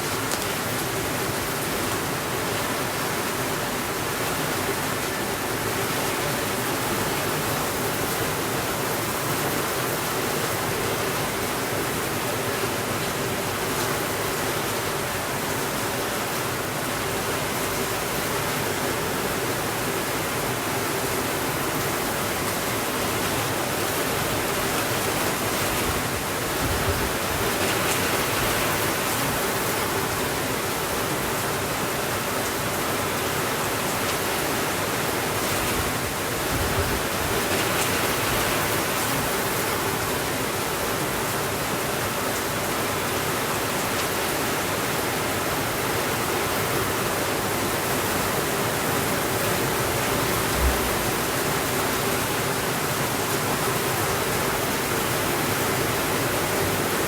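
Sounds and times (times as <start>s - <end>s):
steady rainfall: 0.0s - 57.0s
soft low thumps: 50.5s - 51.3s.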